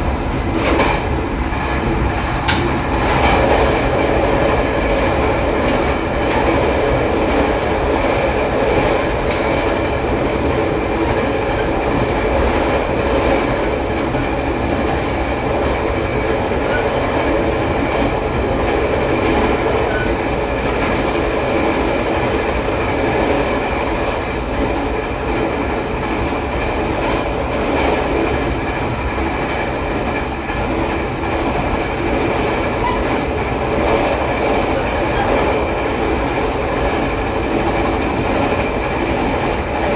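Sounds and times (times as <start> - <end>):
train running on rails: 0.0 - 39.9
wheels pounding on rail: 0.0 - 39.9.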